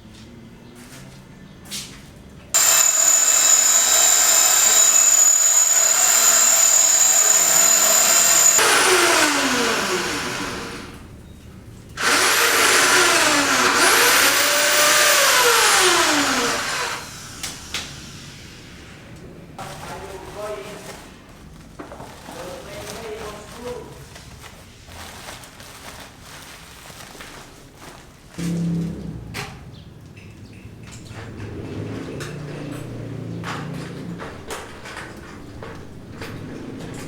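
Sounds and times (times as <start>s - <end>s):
electric power tool whining: 2.6s - 11.2s, 12.0s - 18.8s.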